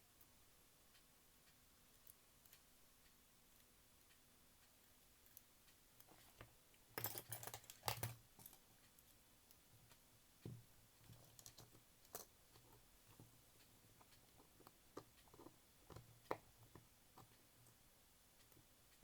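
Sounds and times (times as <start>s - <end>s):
clicks and taps of small tools: 6.0s - 8.6s.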